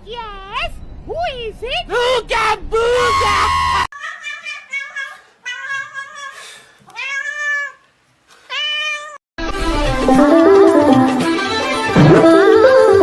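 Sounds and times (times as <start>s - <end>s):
cat meowing: 6.9s - 7.9s, 8.5s - 9.2s.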